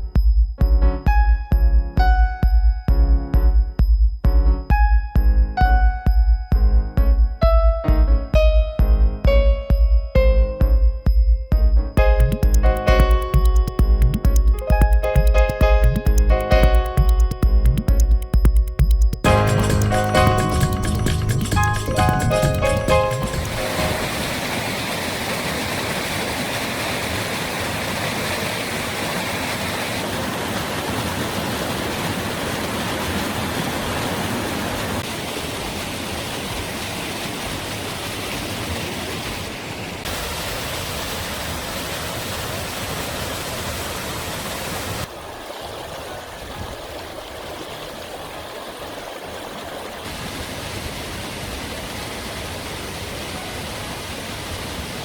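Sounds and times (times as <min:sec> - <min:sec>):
waterfall rushing: 0:19.3 - 0:55.0.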